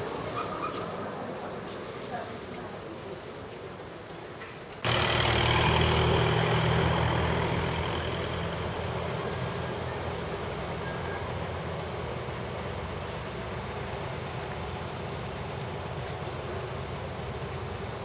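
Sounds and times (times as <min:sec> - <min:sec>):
truck engine running: 0:04.8 - 0:18.0.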